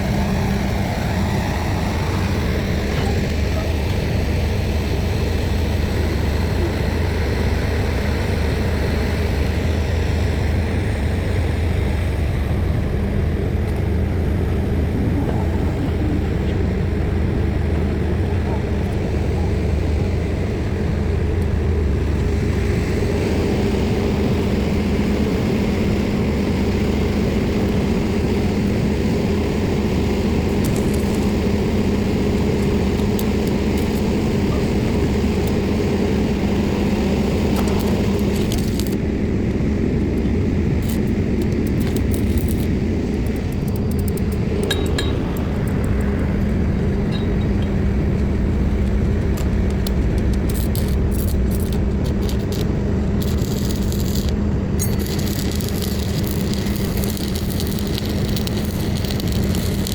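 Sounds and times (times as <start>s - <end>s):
diesel engine droning: 0.0s - 59.9s
faint metallic clinks: 44.6s - 45.5s.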